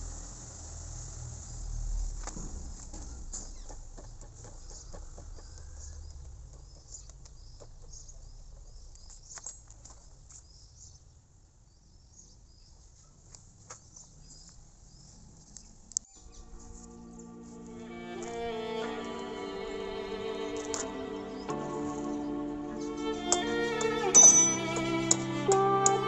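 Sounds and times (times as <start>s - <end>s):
faint bird chirping: 2.9s - 17.4s.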